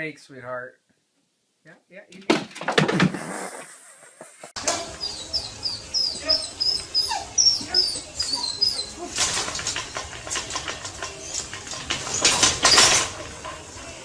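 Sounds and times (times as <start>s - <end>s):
dog whining: 4.6s - 10.2s
clicking and rustling: 9.1s - 13.6s.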